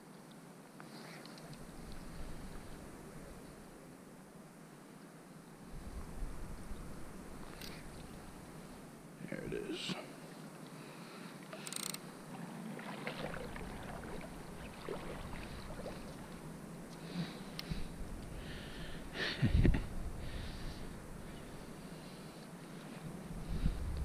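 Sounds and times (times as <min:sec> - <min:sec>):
river water sloshing and splashing: 0:11.3 - 0:16.9
small clicks: 0:11.5 - 0:12.0.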